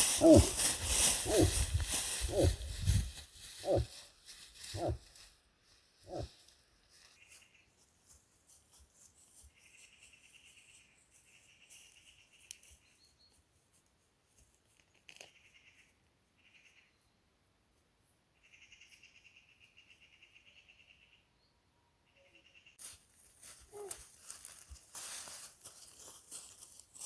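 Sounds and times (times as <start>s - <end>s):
small ticks: 12.3s - 12.9s.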